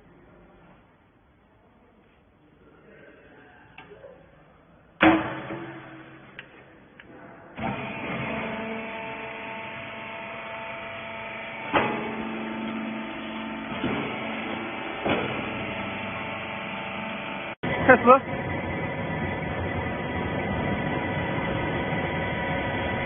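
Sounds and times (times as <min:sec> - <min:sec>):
hydraulic power unit humming: 0:05.0 - 0:23.0.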